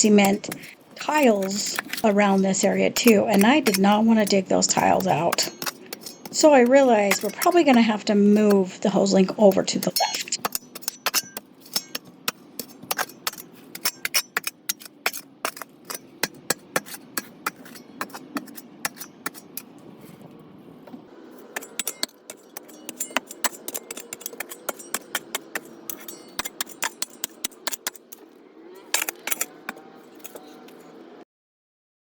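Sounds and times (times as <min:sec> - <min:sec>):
metal tool scraping stones: 0:00.0 - 0:20.3, 0:21.2 - 0:31.0.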